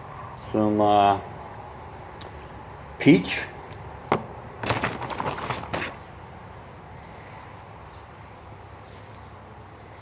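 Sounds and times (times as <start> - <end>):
tins and packets rustling and clicking: 4.6 - 6.2.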